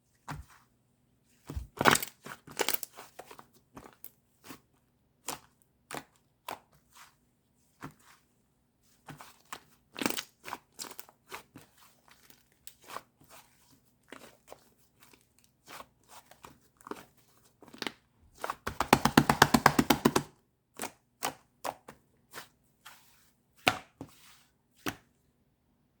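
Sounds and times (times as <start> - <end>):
sticky clicks and pops: 18.7 - 20.3.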